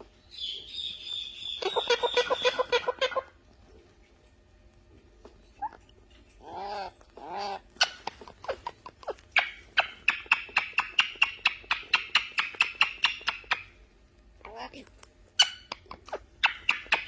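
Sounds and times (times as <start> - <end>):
parrot calls: 0.3 - 3.4, 5.5 - 13.8, 15.3 - 17.0
parrot clicking: 5.6 - 13.8, 14.8 - 17.0.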